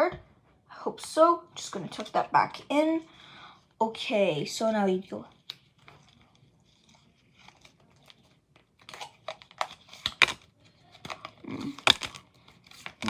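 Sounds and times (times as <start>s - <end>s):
playing cards shuffling: 5.3s - 13.0s.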